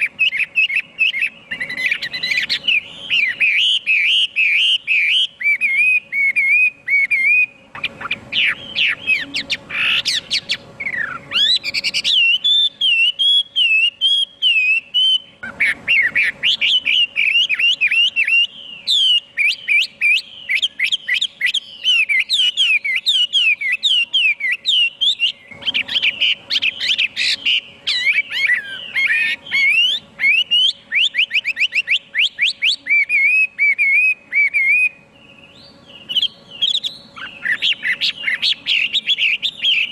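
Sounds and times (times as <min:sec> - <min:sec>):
bird singing whistled phrases: 0:00.0 - 0:39.9.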